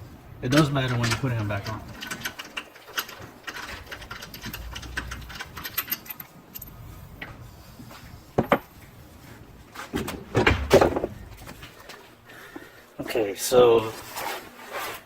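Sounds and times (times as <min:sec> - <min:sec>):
metallic clicking of lug nuts: 0:00.5 - 0:07.3
loud knocks: 0:10.0 - 0:11.4.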